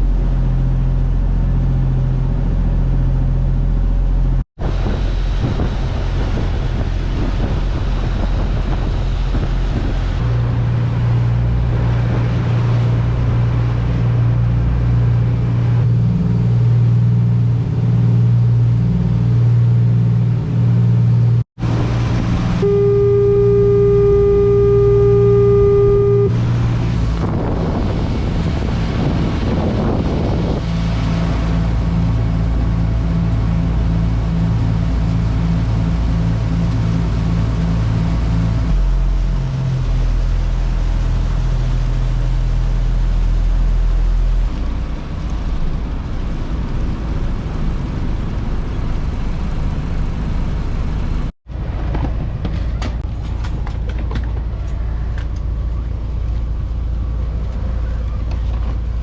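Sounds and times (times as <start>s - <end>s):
low engine drone: 0.0s - 59.0s
horn sounding: 22.1s - 27.0s.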